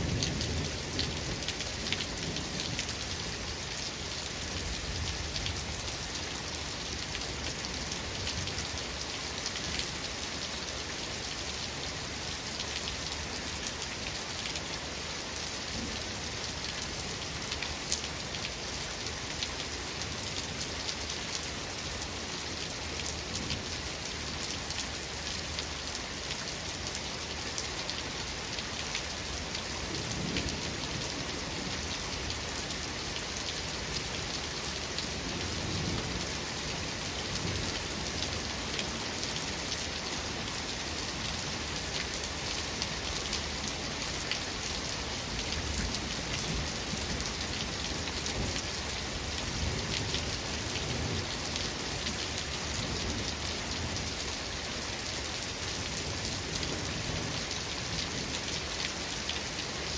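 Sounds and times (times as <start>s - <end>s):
soft rumbles of thunder: 0.0s - 3.0s
steady rain falling: 0.0s - 59.9s.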